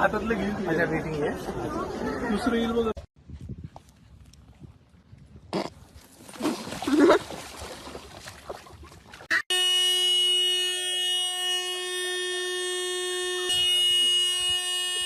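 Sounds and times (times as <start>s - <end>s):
loud steady horn-like tone: 9.4s - 15.0s.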